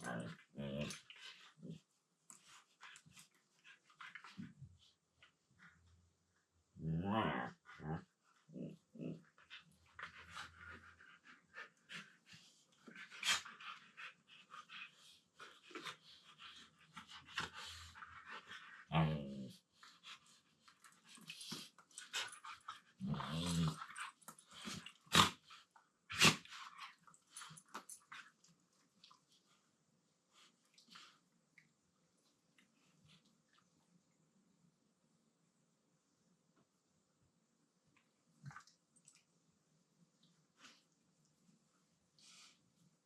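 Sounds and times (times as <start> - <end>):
dogs play growling: 0.0 - 4.6, 6.7 - 28.5.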